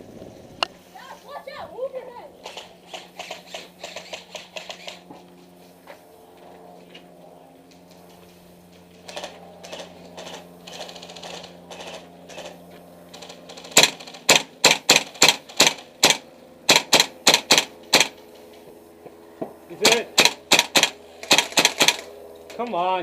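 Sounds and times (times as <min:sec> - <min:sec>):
airsoft rifle shots: 0:02.4 - 0:05.0, 0:09.0 - 0:18.2, 0:19.8 - 0:22.1.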